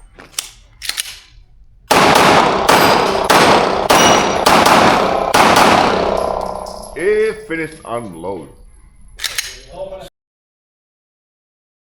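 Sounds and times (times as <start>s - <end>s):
pistol shots ringing: 1.9s - 7.0s.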